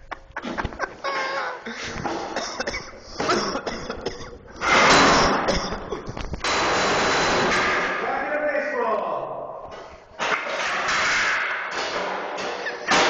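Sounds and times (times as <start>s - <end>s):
desk breaking with a clatter: 4.6s - 5.4s, 6.4s - 8.0s, 10.2s - 13.0s
sledgehammer blows on a desk: 4.6s - 5.5s.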